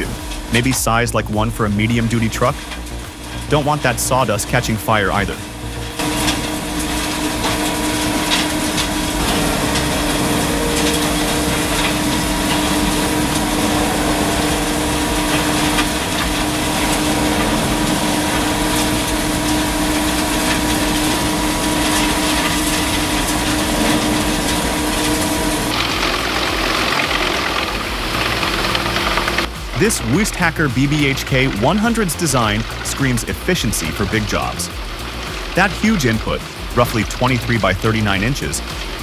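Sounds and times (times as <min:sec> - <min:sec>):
wood chipper engine drone: 0:01.7 - 0:29.6.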